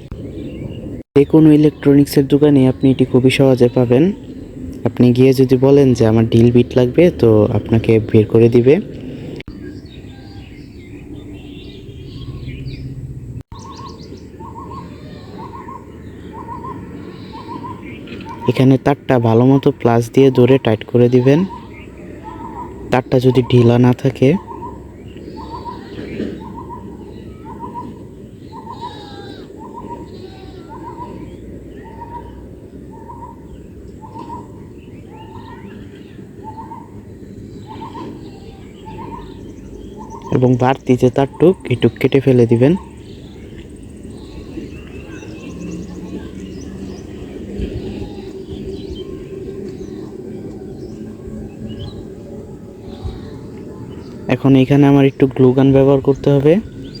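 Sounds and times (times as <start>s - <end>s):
high bird chirps: 9.4s - 18.8s, 21.1s - 57.0s
bird short call: 25.4s - 32.2s.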